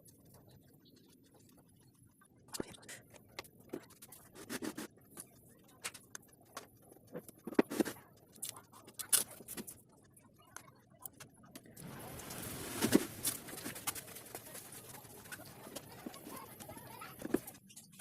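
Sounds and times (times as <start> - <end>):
objects being handled: 2.5 - 9.8, 11.0 - 18.0.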